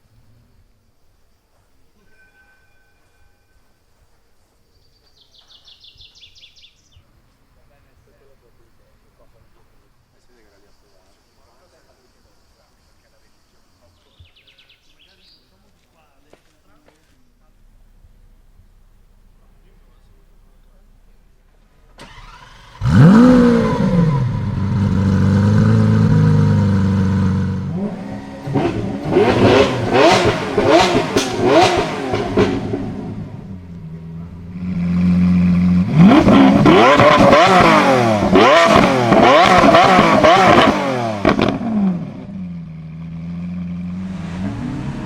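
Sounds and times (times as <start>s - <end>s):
car engine starting: 17.0s - 45.0s
supercar engine revving: 17.6s - 45.0s.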